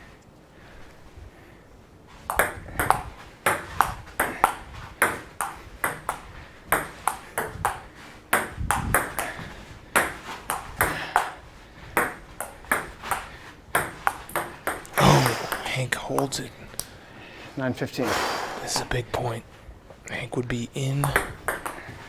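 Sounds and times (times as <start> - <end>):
table tennis ball clicking: 2.3 - 9.3, 10.0 - 11.4, 12.0 - 16.4, 21.0 - 21.8.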